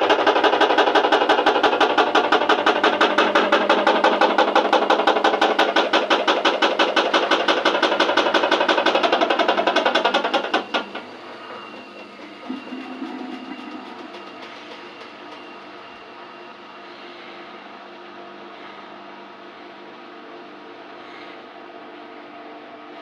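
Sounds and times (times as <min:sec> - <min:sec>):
washing machine knocking: 0:00.0 - 0:16.2.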